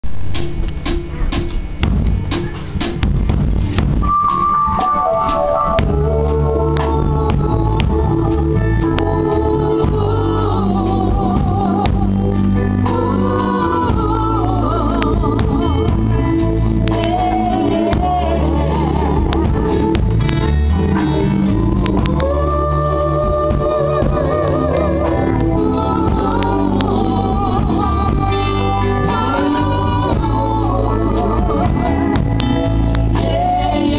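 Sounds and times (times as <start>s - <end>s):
drum kit strokes: 0.0s - 33.9s
low bass notes: 0.0s - 33.9s
organ-like keyboard notes: 0.7s - 33.9s
vocal group singing with vibrato: 5.0s - 33.9s.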